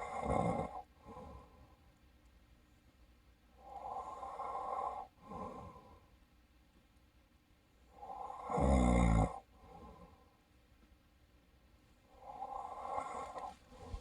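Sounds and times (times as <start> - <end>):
person snoring: 8.0 - 9.4, 12.2 - 14.0.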